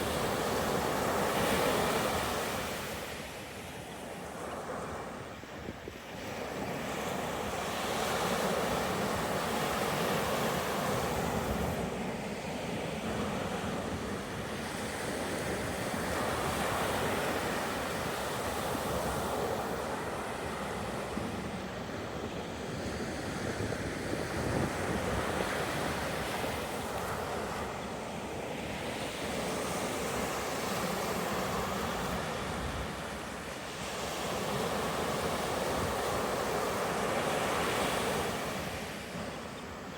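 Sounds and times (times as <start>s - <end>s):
wind rumbling on microphone: 8.2s - 27.9s.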